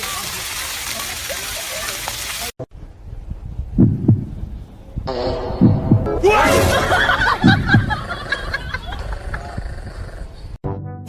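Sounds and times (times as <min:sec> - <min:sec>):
low heartbeat thumps: 0:02.7 - 0:06.3, 0:07.2 - 0:08.2
high bending cries: 0:05.0 - 0:08.6.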